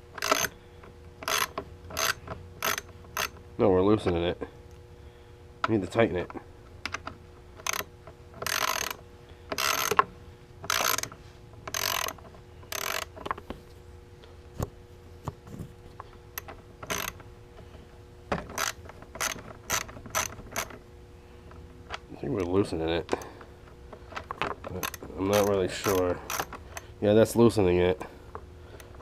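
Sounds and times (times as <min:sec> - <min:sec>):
ratchet wrench clicking: 0:00.2 - 0:00.6, 0:01.2 - 0:03.4, 0:07.6 - 0:13.2, 0:16.4 - 0:17.2, 0:18.5 - 0:20.8, 0:24.7 - 0:26.9.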